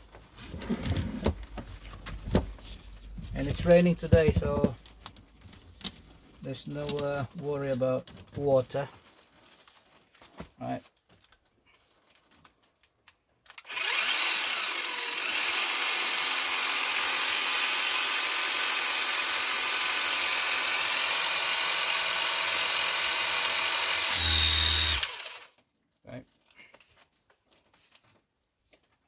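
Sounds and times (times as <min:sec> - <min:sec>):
power washer motor hissing: 0:13.7 - 0:25.4.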